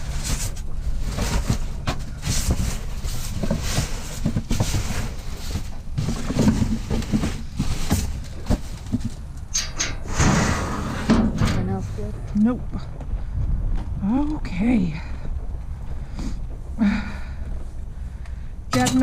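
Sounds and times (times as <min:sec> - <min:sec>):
scrap clattering and rustling: 0:00.0 - 0:14.0.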